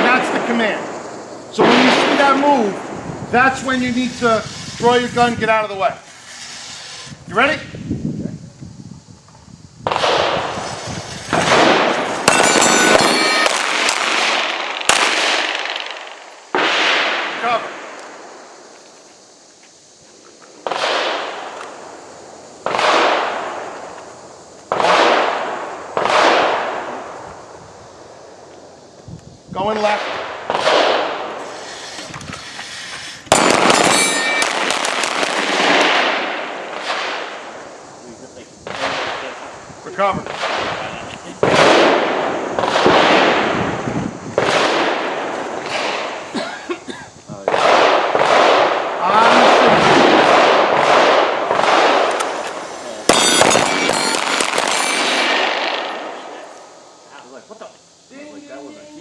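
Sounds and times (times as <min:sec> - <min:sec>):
handgun shots echoing: 0:33.3 - 0:35.8, 0:51.6 - 0:56.1.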